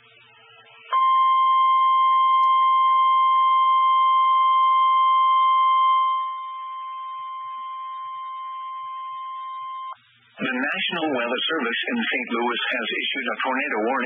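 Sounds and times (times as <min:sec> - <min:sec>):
steady alarm tone: 0:00.4 - 0:10.0.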